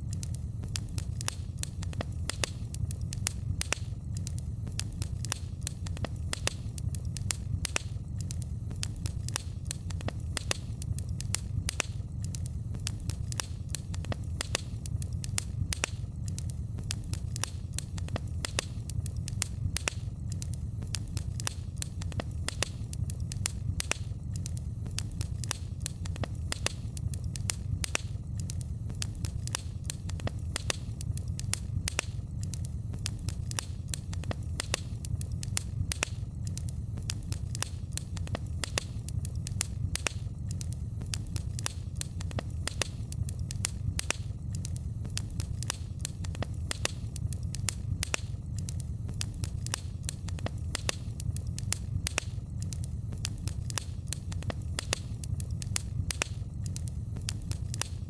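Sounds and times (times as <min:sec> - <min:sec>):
fire crackling and popping: 0:00.0 - 0:58.0.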